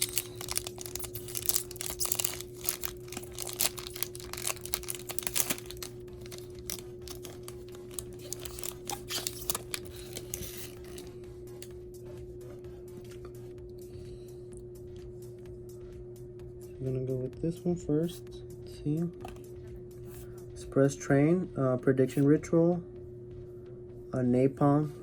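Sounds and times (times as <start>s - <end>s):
foil pack tearing and crinkling: 0.0s - 11.1s
low electrical hum: 0.0s - 25.0s.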